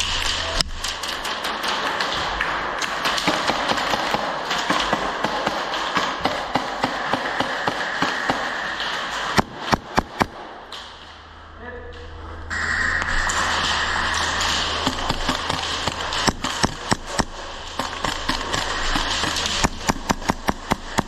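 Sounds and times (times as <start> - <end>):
airsoft guns firing: 0.0 - 11.2, 13.0 - 21.0
bbs striking: 12.0 - 21.0.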